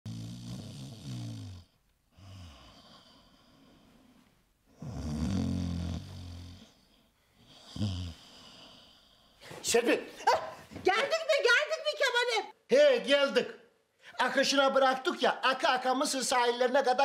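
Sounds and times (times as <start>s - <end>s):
man snoring: 0.1s - 3.6s, 4.7s - 6.8s, 7.4s - 9.0s.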